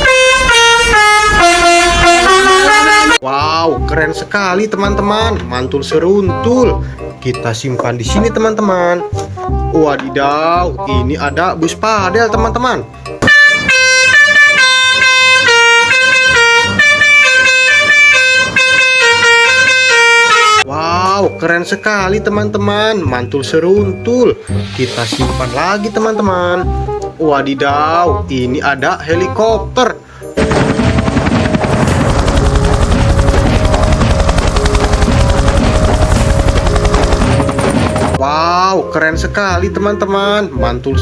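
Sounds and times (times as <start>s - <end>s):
multi-tone bus horn tune: 0.0s - 3.2s, 13.2s - 20.7s
helicopter rotor chopping: 30.4s - 38.2s.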